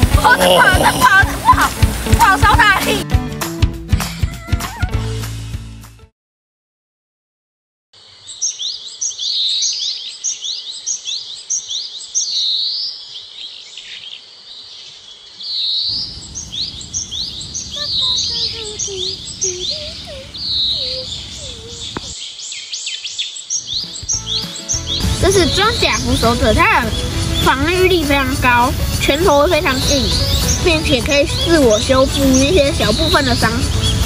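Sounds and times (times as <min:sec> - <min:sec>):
birds chirping and whistling: 0:08.3 - 0:34.0
falling series of bird notes: 0:23.6 - 0:34.0.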